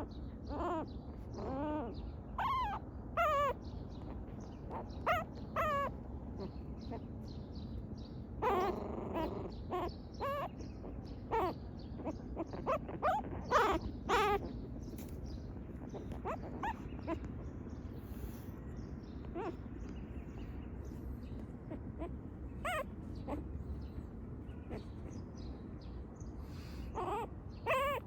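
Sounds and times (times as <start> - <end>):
puppies crying and whining: 0.0 - 7.2, 8.3 - 18.5, 19.2 - 19.6, 20.3 - 25.2, 26.5 - 28.0.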